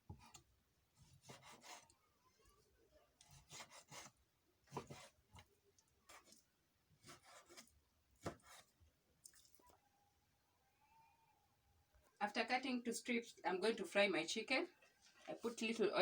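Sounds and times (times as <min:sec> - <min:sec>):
knife slicing on cutting board: 0:04.7 - 0:05.2.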